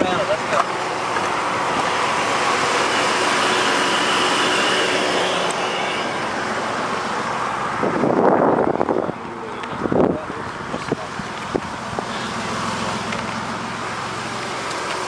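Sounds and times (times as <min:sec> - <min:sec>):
motor vehicle noise rushing: 0:00.0 - 0:15.0
wind buffeting microphone: 0:07.4 - 0:12.1.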